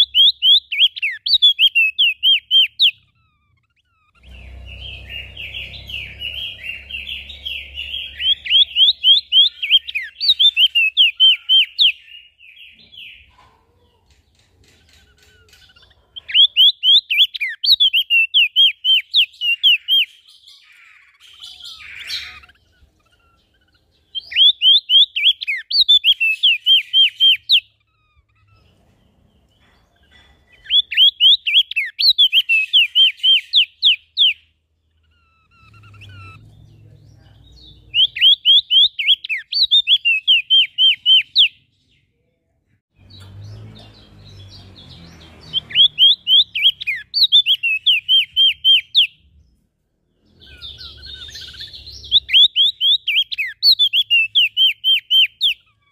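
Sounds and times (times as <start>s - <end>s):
songbird chirping: 0.0s - 55.9s
faint low rumbling: 4.2s - 8.4s.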